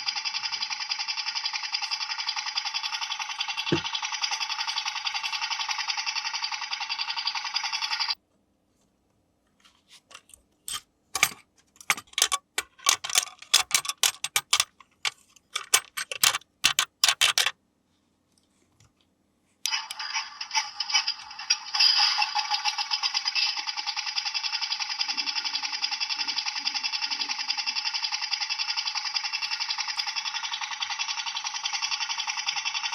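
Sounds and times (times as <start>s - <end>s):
toy motor buzzing: 0.0s - 8.2s, 11.9s - 14.7s, 15.6s - 17.5s, 19.7s - 32.9s
plastic toy clicks and taps: 10.7s - 17.5s.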